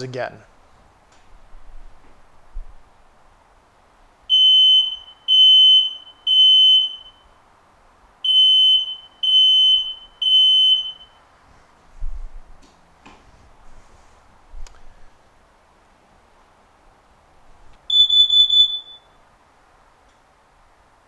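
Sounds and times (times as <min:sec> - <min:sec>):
smoke alarm high-pitched beeps: 0:04.3 - 0:07.4, 0:08.2 - 0:11.2, 0:17.9 - 0:19.2.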